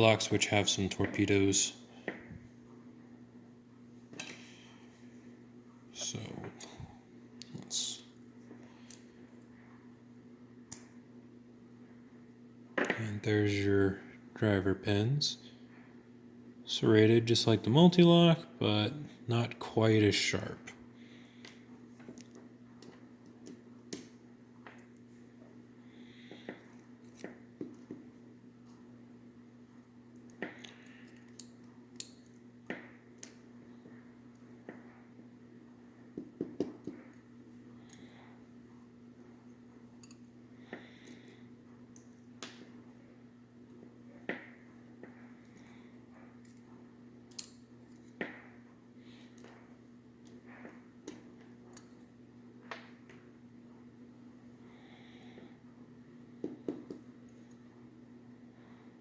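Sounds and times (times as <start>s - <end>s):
steady low hum: 0.0s - 59.0s
small metal lock parts clicking: 47.3s - 48.1s.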